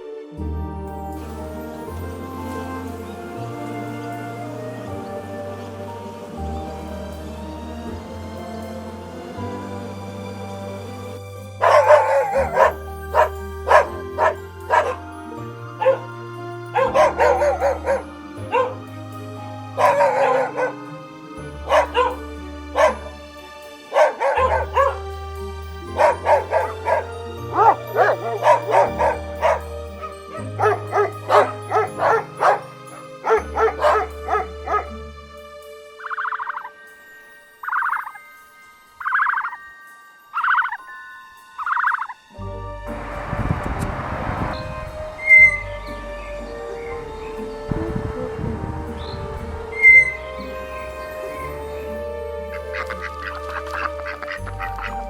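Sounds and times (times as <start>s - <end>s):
background music: 0.0s - 55.0s
dog barking: 11.6s - 15.0s, 15.8s - 16.1s, 16.8s - 18.8s, 19.8s - 20.9s, 21.6s - 23.2s, 23.9s - 25.0s, 25.8s - 34.9s.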